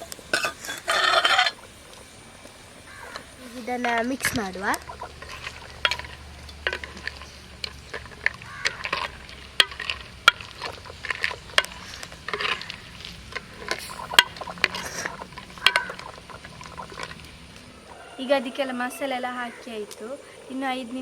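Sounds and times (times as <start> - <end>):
spoon scraping a pot: 0.0 - 2.0, 3.0 - 17.6.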